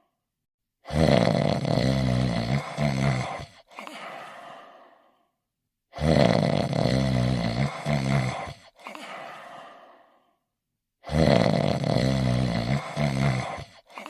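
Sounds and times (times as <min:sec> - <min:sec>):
cartoon character snoring: 0:00.8 - 0:04.0, 0:05.9 - 0:09.0, 0:11.0 - 0:14.0.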